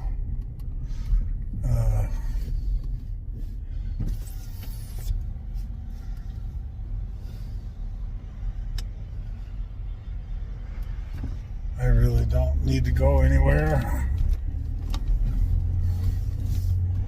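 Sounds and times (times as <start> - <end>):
low rumble inside a car: 0.0 - 17.0.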